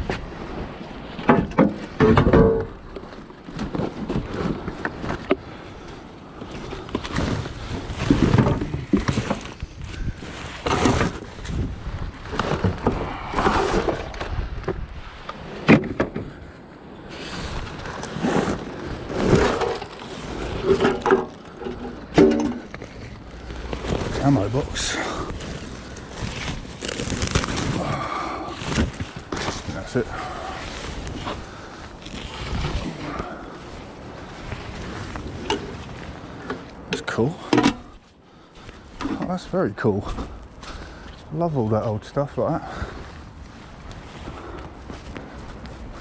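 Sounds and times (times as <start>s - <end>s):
wooden and metal junk clattering: 1.1s - 5.4s, 6.4s - 14.4s, 17.5s - 31.9s.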